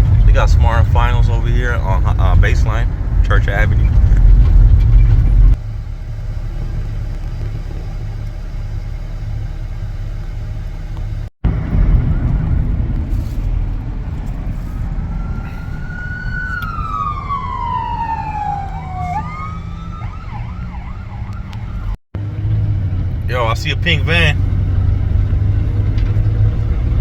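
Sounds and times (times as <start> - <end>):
car road and engine rumble: 0.0 - 27.0
emergency vehicle siren wailing: 14.5 - 22.0.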